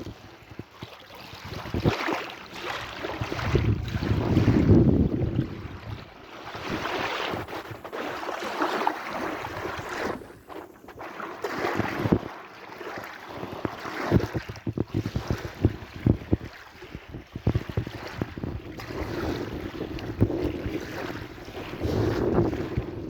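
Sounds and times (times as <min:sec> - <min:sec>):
wind buffeting microphone: 0:00.0 - 0:02.1, 0:02.9 - 0:08.3, 0:13.4 - 0:23.0
sea waves washing in: 0:01.7 - 0:14.4, 0:15.0 - 0:23.0.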